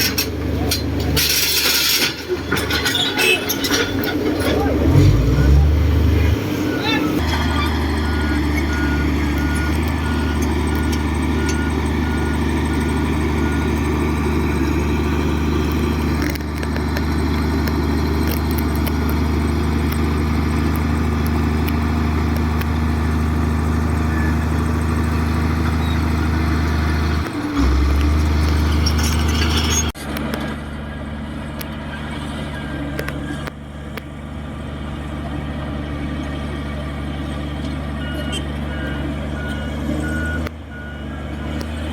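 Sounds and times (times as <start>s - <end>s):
heavy diesel engine running: 0.0s - 41.9s
high beeps: 6.7s - 12.4s.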